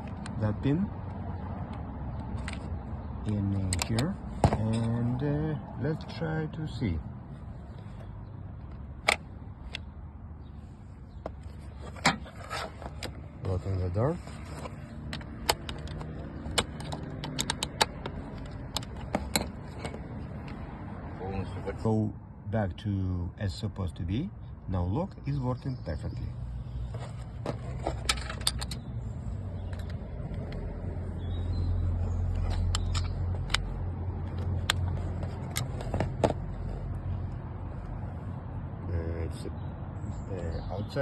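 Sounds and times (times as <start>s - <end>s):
car door lock clicking: 15.3s - 18.1s.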